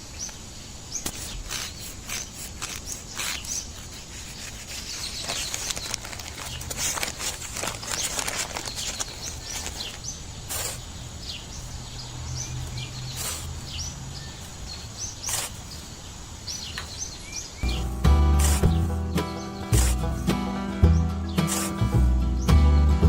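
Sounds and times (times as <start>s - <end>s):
small birds chirping: 0.0s - 22.7s
outdoor background noise: 0.0s - 23.0s
music: 17.6s - 23.0s.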